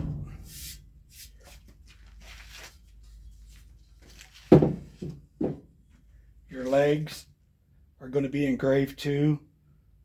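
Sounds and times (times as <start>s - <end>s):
light scrapes and rustles: 0.5s - 4.5s.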